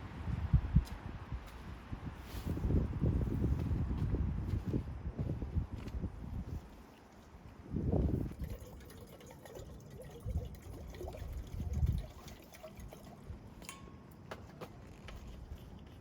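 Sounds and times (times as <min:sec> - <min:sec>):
wind buffeting microphone: 0:00.0 - 0:06.9, 0:07.5 - 0:09.1, 0:09.9 - 0:12.2
liquid pouring and trickling: 0:08.0 - 0:13.9.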